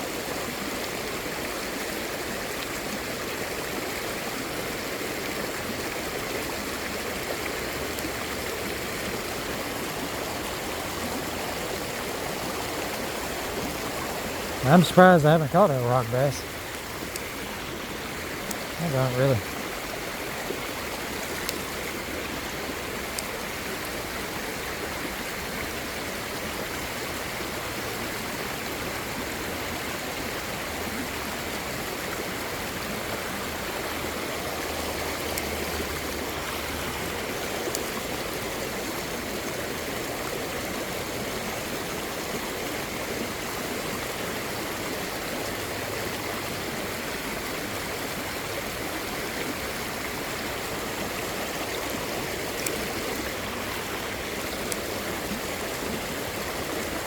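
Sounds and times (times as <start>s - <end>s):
creek water flowing over rocks: 0.0s - 57.0s
faint clicks: 16.8s - 18.8s, 51.7s - 53.3s, 54.4s - 54.9s.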